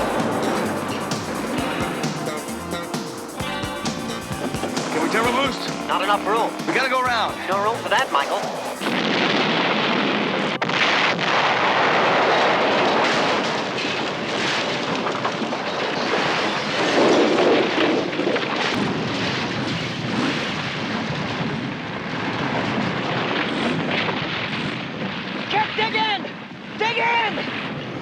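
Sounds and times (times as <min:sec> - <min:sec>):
explosion and rockslide roar: 0:08.9 - 0:25.6.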